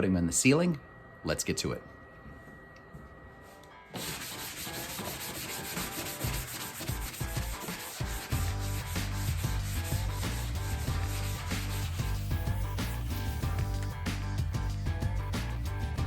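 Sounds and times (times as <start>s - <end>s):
sanding plywood: 4.0s - 14.3s
background music with beat: 4.0s - 16.0s.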